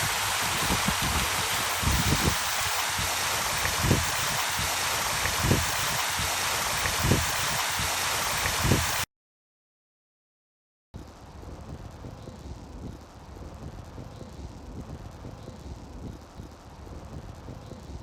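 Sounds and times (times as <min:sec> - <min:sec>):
rushing water-like noise: 0:00.0 - 0:09.1
soft low thumps: 0:11.0 - 0:18.0.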